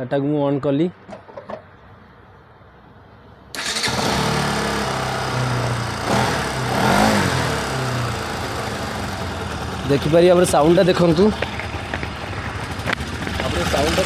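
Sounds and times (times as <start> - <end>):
motorcycle engine starting and idling: 3.5 - 14.0
motorcycle engine revving: 3.6 - 14.0.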